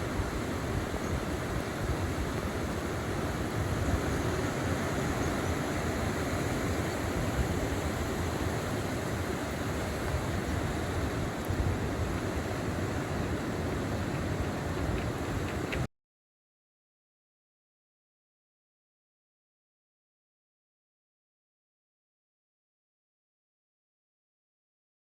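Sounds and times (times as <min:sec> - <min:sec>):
heavy surf roaring: 0:00.0 - 0:15.9
wind rumbling on microphone: 0:00.0 - 0:15.9.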